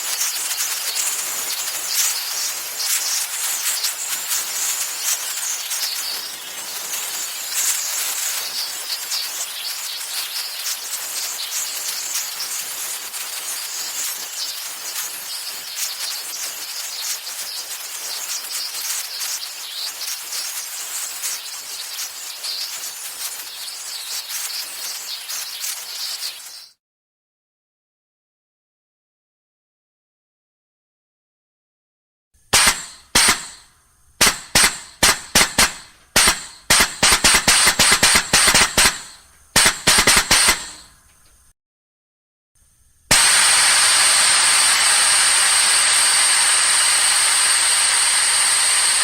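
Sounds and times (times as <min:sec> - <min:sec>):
pressurized gas hissing: 0:32.5 - 0:33.6, 0:34.2 - 0:41.0, 0:43.1 - 0:49.0.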